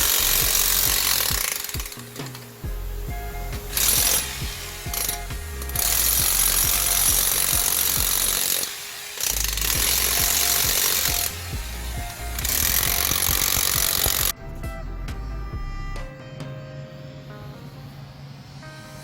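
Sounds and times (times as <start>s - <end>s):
demolition hammer chipping concrete: 0.0s - 2.6s, 3.5s - 14.3s.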